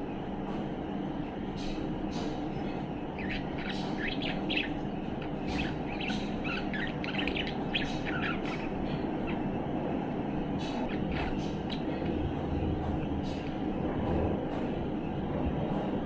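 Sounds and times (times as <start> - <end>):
steady low hum: 0.0 - 16.0
budgerigar chirping and warbling: 3.2 - 9.4.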